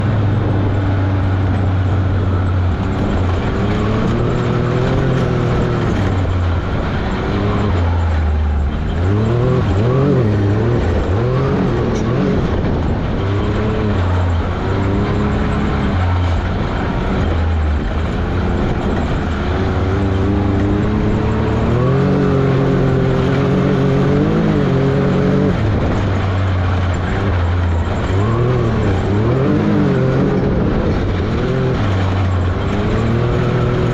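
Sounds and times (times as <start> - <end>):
engine running hard: 0.0 - 33.9.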